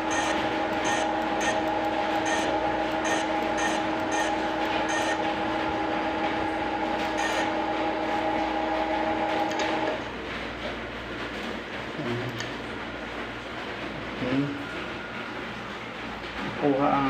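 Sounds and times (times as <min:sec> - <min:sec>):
machine hum with held tones: 0:00.0 - 0:10.1.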